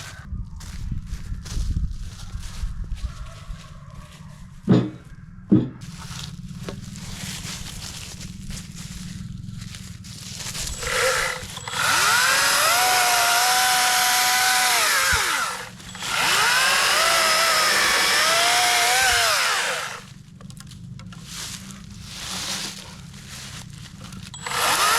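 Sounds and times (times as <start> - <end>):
battery chainsaw whining: 6.6 - 20.2, 24.0 - 24.9.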